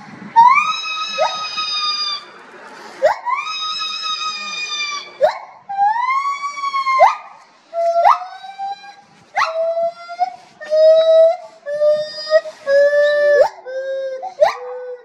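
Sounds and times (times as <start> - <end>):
primates calling: 0.0 - 15.0.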